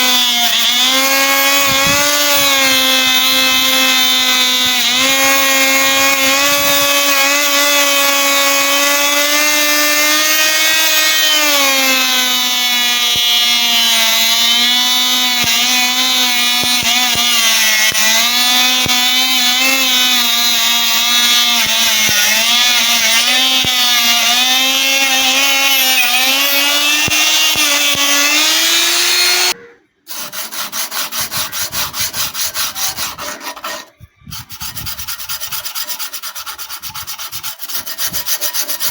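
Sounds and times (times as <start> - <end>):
angle grinder whining: 0.0 - 38.9
fast rhythmic scraping: 30.1 - 38.9.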